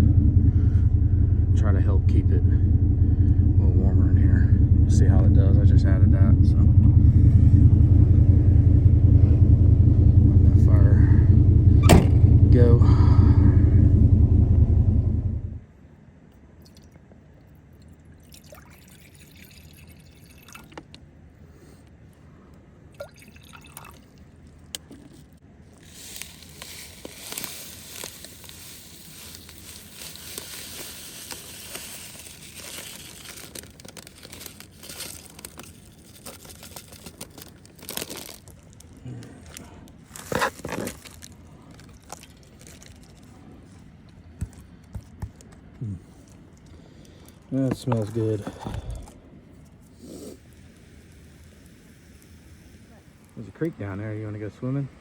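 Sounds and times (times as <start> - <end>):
fat and coals popping: 24.7 - 43.3
steak sizzling over charcoal: 25.8 - 36.0.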